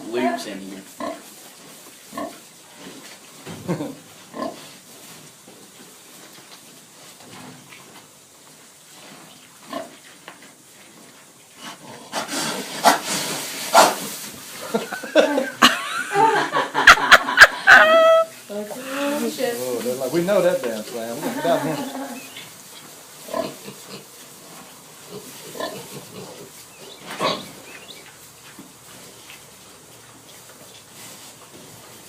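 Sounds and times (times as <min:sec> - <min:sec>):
pigs grunting: 0:03.7 - 0:04.8, 0:23.3 - 0:24.2, 0:25.0 - 0:28.0
piglets scuffling and knocking: 0:18.6 - 0:32.0.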